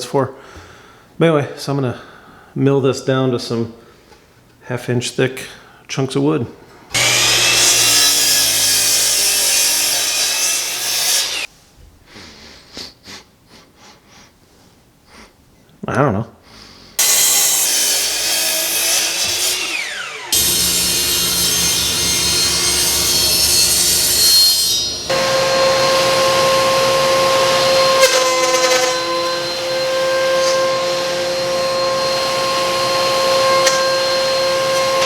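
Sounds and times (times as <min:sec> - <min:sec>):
rhythmic wood cutting: 0:06.9 - 0:11.5, 0:17.0 - 0:35.0
planer running with high hum: 0:20.0 - 0:24.2, 0:24.8 - 0:35.0
motor winding down whine: 0:24.8 - 0:35.0.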